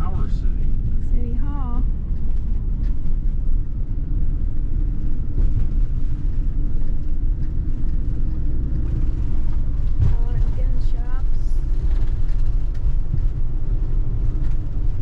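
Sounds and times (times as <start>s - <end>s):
car road noise rumble: 0.0s - 15.0s.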